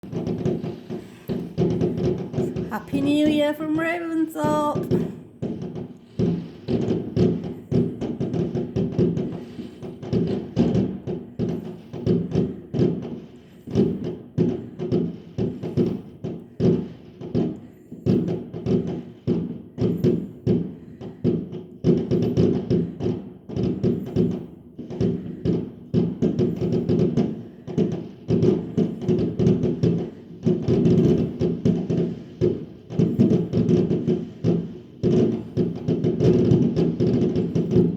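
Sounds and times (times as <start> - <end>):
uneven percussive beat: 0.0 - 9.3
fireworks exploding: 0.0 - 37.9.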